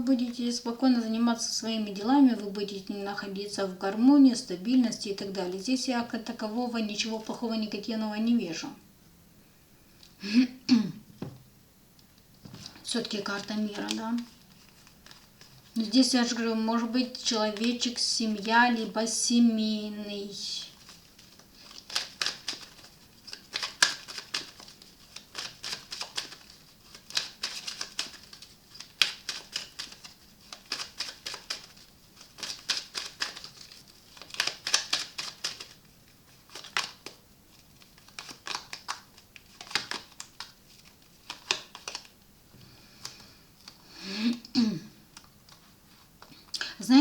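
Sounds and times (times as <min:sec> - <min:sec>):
cards being shuffled: 0:12.4 - 0:16.4, 0:17.1 - 0:18.6, 0:20.7 - 0:42.2.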